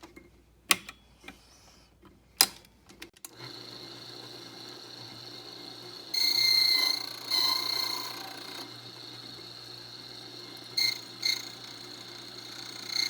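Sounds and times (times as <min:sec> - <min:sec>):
key-cutting machine whining: 0:03.3 - 0:13.0.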